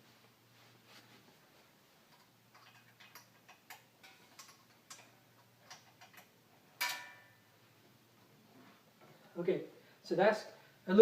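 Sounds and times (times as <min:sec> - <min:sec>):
small metallic clicks: 0:02.1 - 0:07.2.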